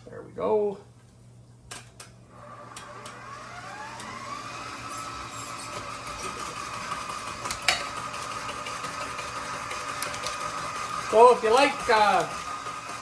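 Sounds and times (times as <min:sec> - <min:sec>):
stand mixer motor running: 0:02.3 - 0:13.0.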